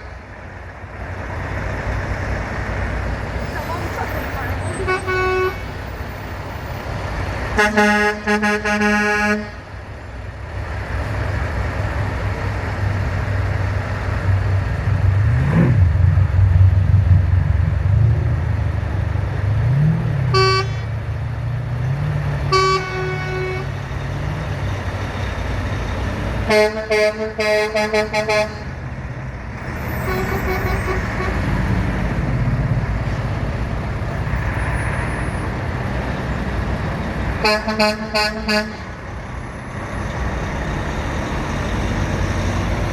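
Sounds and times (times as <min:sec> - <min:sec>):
truck engines running: 0:00.0 - 0:42.9
truck horns blasting: 0:03.4 - 0:06.1, 0:07.4 - 0:09.8, 0:20.2 - 0:21.0, 0:22.4 - 0:23.9, 0:26.4 - 0:28.8, 0:29.8 - 0:31.8, 0:37.4 - 0:39.0.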